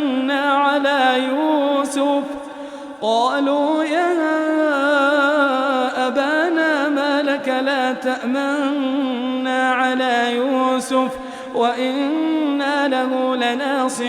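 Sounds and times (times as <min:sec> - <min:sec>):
man chanting melodically: 0:00.0 - 0:14.0.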